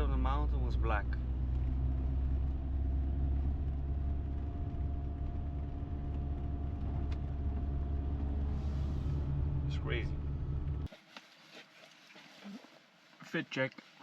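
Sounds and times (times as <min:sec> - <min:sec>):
road rumble: 0:00.0 - 0:10.9
van engine drone: 0:00.0 - 0:10.9.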